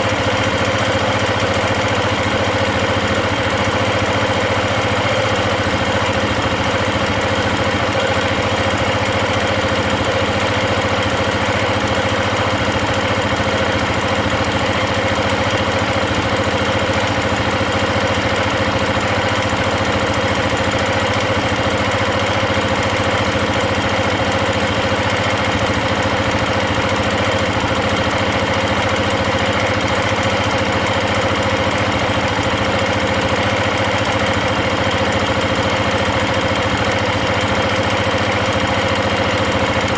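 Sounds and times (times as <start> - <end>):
engine valve chatter: 0.0 - 39.9
motorcycle engine idling: 0.0 - 39.9.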